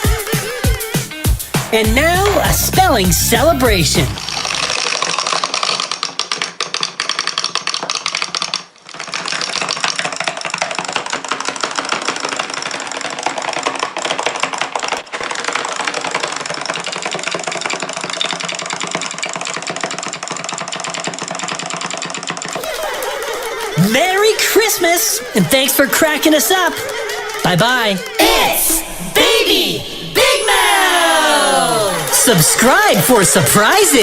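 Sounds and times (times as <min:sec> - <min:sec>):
rapid clicking and clattering: 0:04.2 - 0:28.2.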